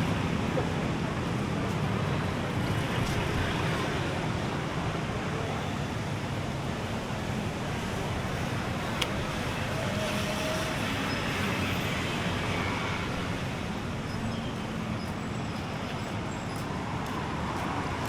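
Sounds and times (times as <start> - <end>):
road traffic: 0.0 - 18.0
wind: 0.0 - 18.0.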